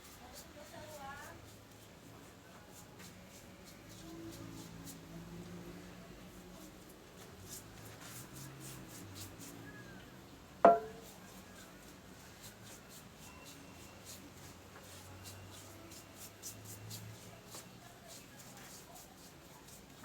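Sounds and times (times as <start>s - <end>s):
sharp knock with ring: 10.7s - 11.0s.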